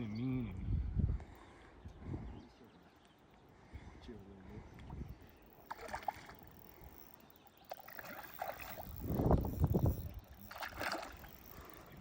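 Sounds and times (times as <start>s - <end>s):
water splashing and sloshing: 5.6s - 6.9s, 7.7s - 9.4s, 10.4s - 11.6s.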